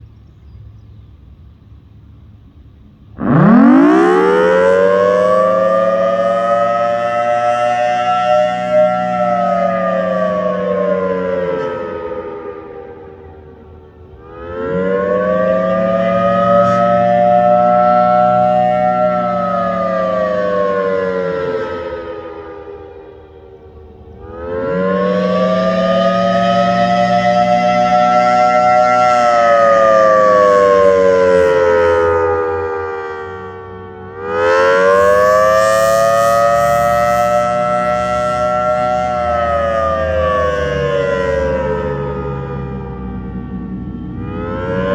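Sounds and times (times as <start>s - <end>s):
civil-defense siren wailing: 0.0s - 44.9s.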